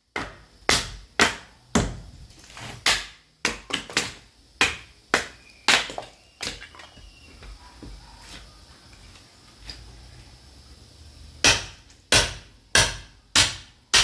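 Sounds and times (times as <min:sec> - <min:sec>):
sledgehammer striking steel chisel: 0:11.5 - 0:14.0.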